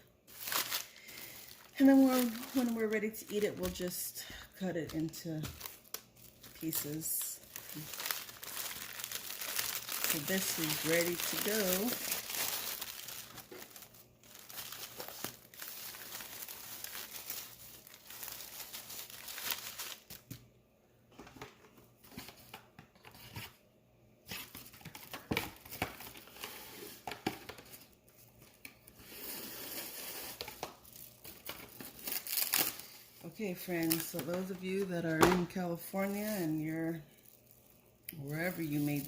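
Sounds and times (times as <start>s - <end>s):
plastic crinkling and rustling: 0.3s - 20.4s, 24.3s - 39.0s.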